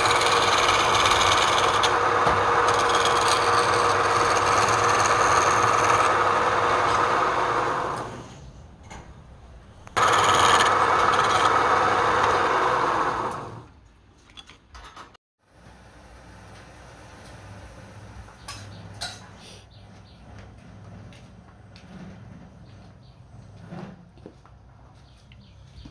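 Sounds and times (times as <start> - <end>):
lathe tool cutting wood: 0.0 - 8.3, 10.0 - 13.7.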